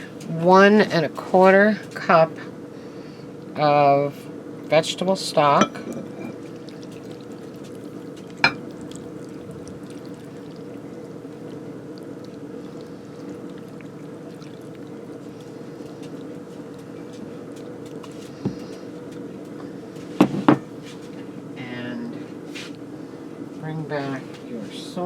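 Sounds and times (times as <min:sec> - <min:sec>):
liquid pouring into pot: 0:05.9 - 0:18.0.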